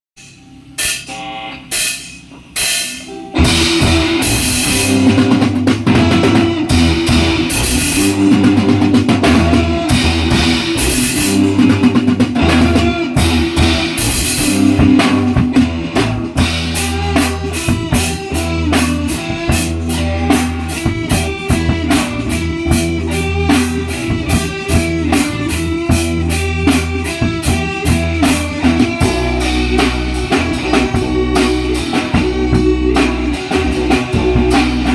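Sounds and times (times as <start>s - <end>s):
band playing rock music: 0.2s - 34.9s
drum and cymbal hits: 0.2s - 34.9s.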